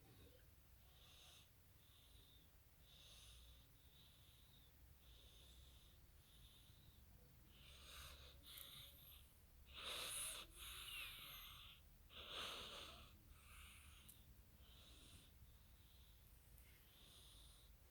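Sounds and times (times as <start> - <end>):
cat snoring: 9.7 - 16.1.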